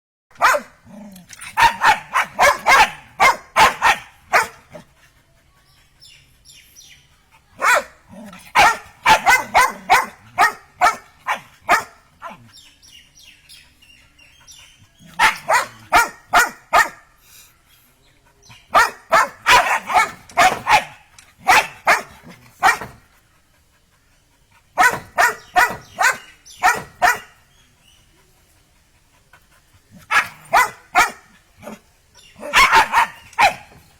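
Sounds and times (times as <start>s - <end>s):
dog barking: 0.4s - 0.7s, 1.6s - 4.8s, 7.6s - 7.9s, 8.5s - 12.0s, 15.1s - 17.0s, 18.7s - 23.0s, 24.8s - 27.4s, 30.1s - 31.8s, 32.4s - 33.8s.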